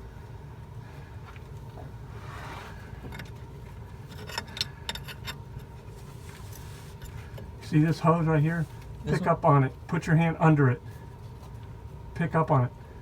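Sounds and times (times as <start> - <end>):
steady low hum: 0.0 - 13.0
tools clicking and scraping: 4.0 - 5.7.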